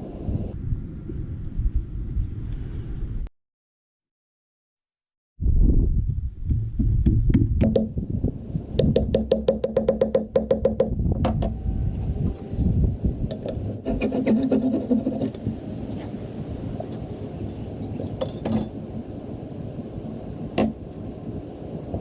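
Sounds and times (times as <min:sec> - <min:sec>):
sharp knocks: 0:06.5 - 0:08.0, 0:08.8 - 0:11.6.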